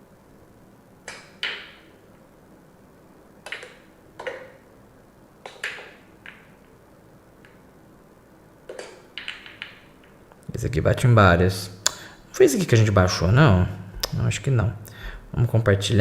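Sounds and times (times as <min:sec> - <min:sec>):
billiard balls clacking: 0:01.1 - 0:02.0, 0:03.5 - 0:04.6, 0:05.5 - 0:06.8, 0:08.7 - 0:10.3.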